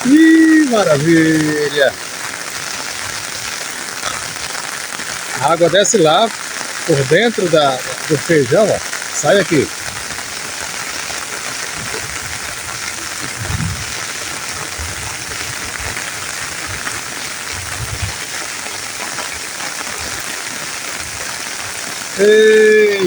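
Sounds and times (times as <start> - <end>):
heavy rain pouring: 0.0 - 23.0
short low thumps: 13.3 - 13.9, 17.5 - 18.1.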